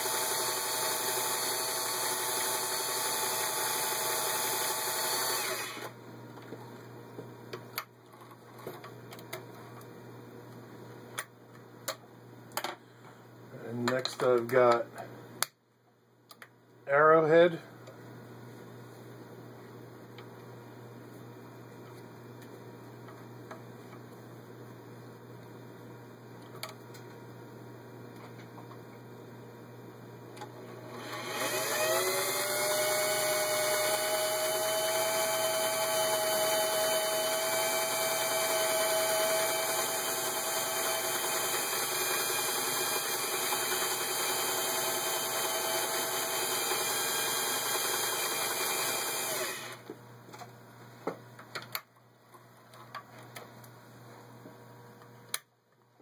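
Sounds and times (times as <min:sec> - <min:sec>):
sewing machine running: 0:00.0 - 0:05.9, 0:30.8 - 0:49.8.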